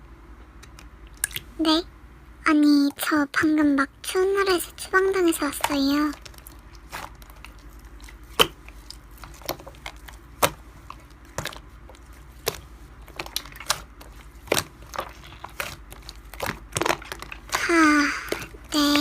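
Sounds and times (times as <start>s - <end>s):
slime clicking and popping: 8.2s - 17.6s.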